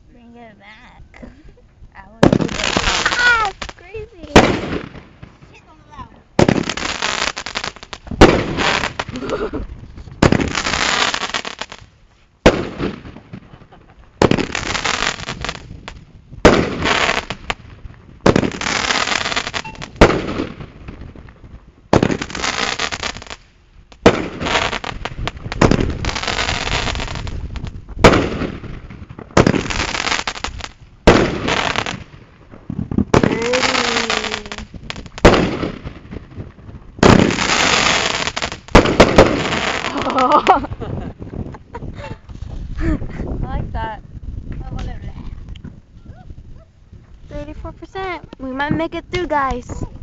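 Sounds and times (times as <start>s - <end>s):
fireworks banging and crackling: 0.0s - 50.0s.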